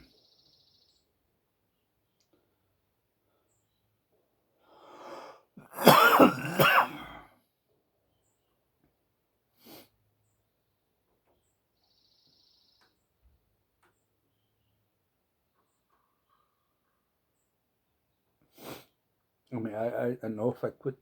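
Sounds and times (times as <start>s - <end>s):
man breathing out: 4.7s - 5.5s
man coughing: 5.6s - 7.3s.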